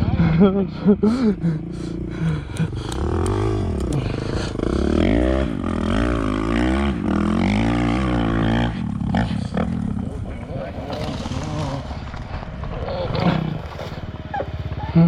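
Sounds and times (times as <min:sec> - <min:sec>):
off-road vehicle engine revving: 0:01.4 - 0:15.0.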